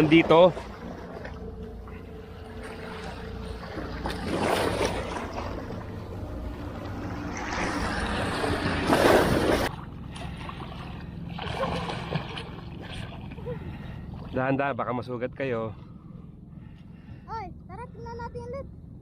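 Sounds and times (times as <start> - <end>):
sea surf washing: 0.0 - 9.7.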